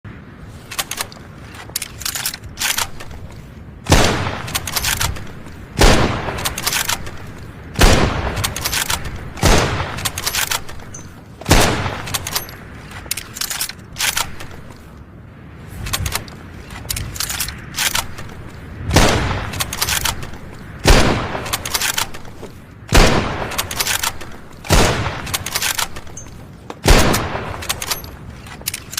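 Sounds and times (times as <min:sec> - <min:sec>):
rifle bolt clacking: 0:00.6 - 0:05.6, 0:06.3 - 0:14.9, 0:15.8 - 0:18.5, 0:19.4 - 0:20.6, 0:21.4 - 0:28.9
loud rifle shots: 0:03.9 - 0:12.5, 0:17.8 - 0:26.2, 0:26.8 - 0:28.1.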